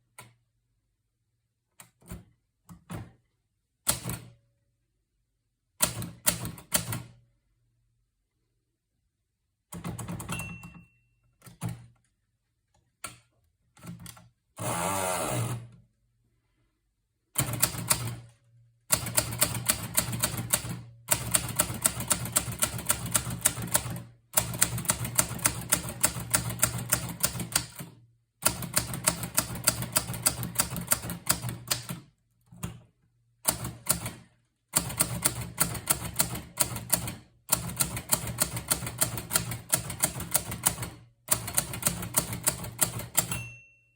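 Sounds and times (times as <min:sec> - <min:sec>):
manual typewriter keystrokes: 0:03.9 - 0:04.3, 0:05.8 - 0:07.2, 0:09.7 - 0:10.8, 0:11.4 - 0:12.0, 0:13.0 - 0:15.7, 0:17.4 - 0:18.3, 0:18.9 - 0:32.9, 0:33.5 - 0:43.6.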